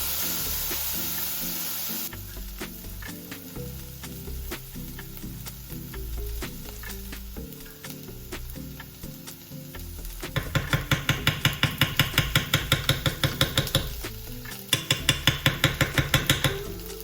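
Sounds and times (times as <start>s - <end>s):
whisk striking a bowl: 10.2s - 16.7s.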